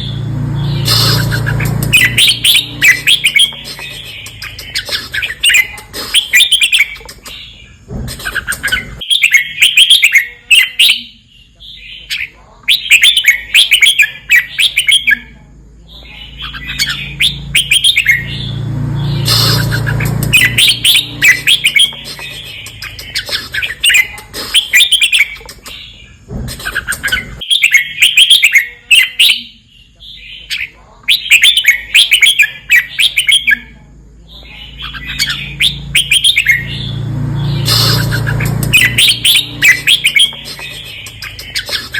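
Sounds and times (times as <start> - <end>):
bird singing whistled phrases: 0.7 - 7.6, 19.2 - 25.8, 34.5 - 41.9
low rumble: 16.0 - 22.6, 34.4 - 41.4.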